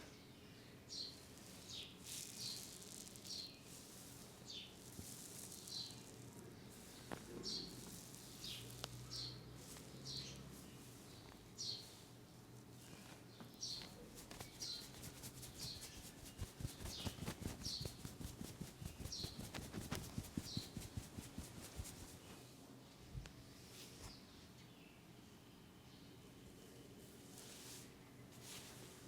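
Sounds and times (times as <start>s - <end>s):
bird chirping: 13.5s - 22.1s
rapid hand taps: 14.2s - 22.1s.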